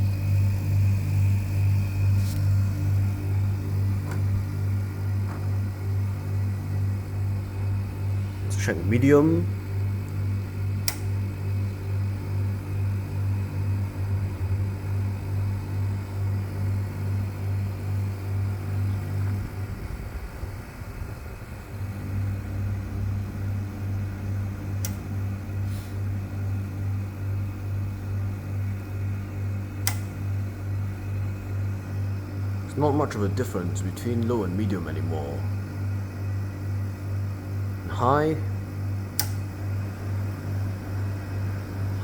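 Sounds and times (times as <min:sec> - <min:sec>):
air conditioner fan humming: 0:00.0 - 0:42.0
sharp clicks: 0:29.8 - 0:30.1, 0:39.1 - 0:39.5.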